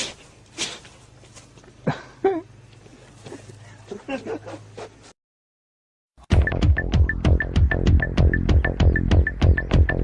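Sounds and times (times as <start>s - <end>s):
electronic dance music: 6.3s - 9.4s.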